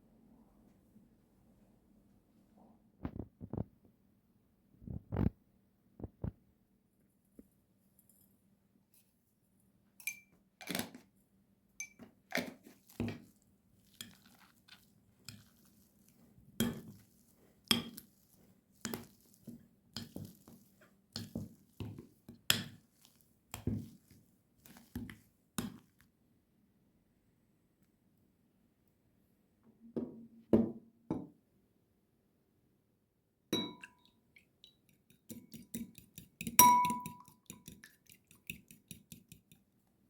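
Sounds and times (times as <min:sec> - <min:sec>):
dishes and utensils clinking: 0:35.3 - 0:37.8.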